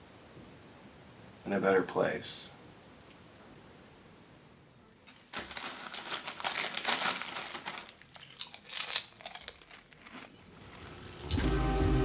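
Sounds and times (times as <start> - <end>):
crinkling crumpling handling noise: 5.0 - 11.2.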